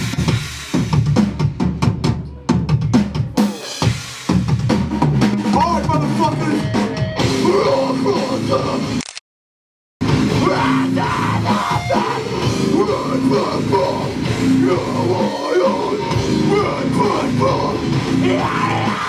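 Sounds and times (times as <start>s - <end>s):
drums: 0.0s - 9.0s, 10.0s - 19.0s
distorted electric guitar: 5.5s - 9.0s, 10.0s - 19.0s
person yelling: 10.4s - 12.4s, 18.2s - 19.0s.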